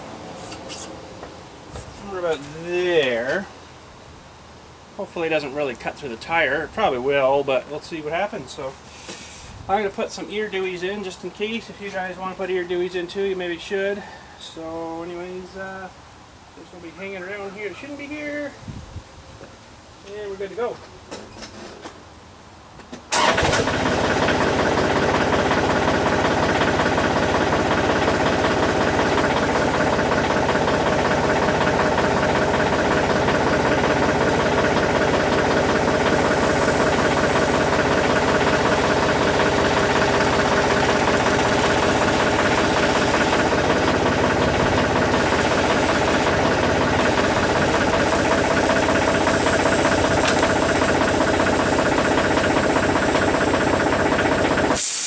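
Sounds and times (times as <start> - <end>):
tractor engine running: 23.1 - 55.0.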